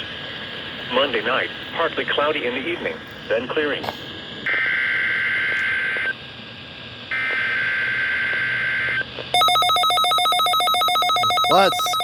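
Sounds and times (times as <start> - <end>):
warbling alarm tone: 7.1 - 12.0
shrill digital data bursts: 8.1 - 12.0.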